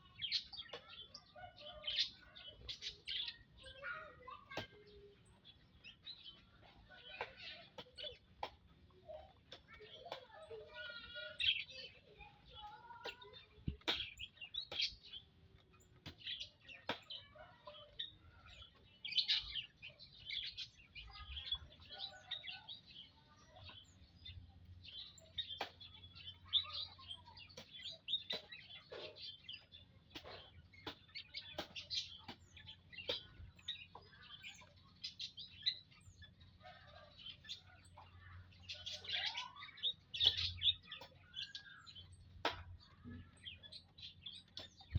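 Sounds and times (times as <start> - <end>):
flock of birds chirping: 0.0 - 44.9.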